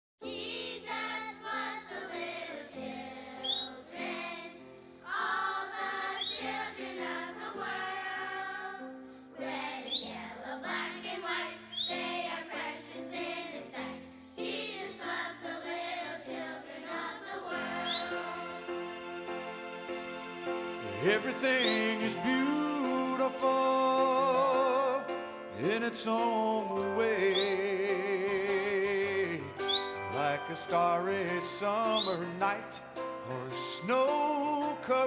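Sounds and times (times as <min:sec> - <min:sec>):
choir-like singing: 0:00.3 - 0:32.6
high rising chirp: 0:03.4 - 0:03.8, 0:11.7 - 0:12.2, 0:17.7 - 0:18.8, 0:20.9 - 0:23.0, 0:26.5 - 0:28.4, 0:29.0 - 0:32.4.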